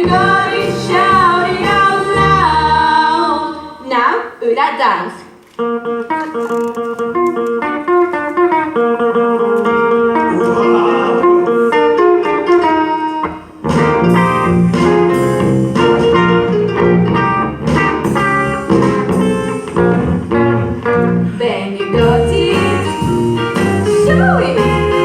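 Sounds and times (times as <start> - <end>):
bass line: 0.0 - 3.3, 13.6 - 25.0
plucked guitar music: 5.6 - 25.0.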